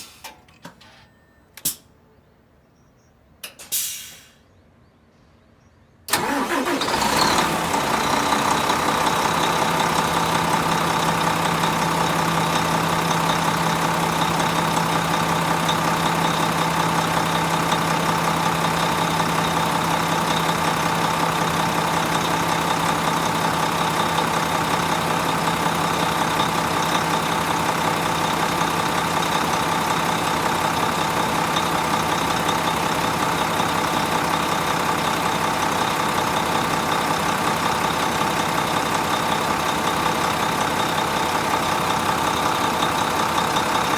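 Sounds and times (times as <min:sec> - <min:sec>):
diesel bus engine idling: 0:06.1 - 0:43.9.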